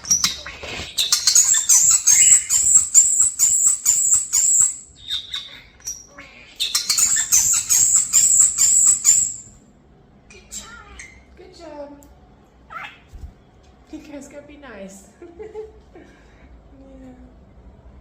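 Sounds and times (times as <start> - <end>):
starlings harsh repeated calls: 0.0 - 9.5.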